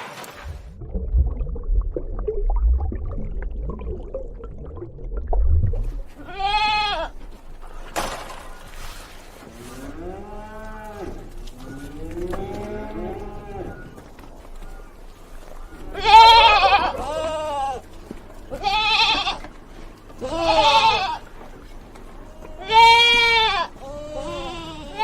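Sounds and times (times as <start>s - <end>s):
livestock bleating: 6.2s - 7.2s, 9.6s - 14.0s, 15.8s - 17.9s, 18.5s - 19.5s, 20.2s - 21.3s, 22.3s - 25.0s.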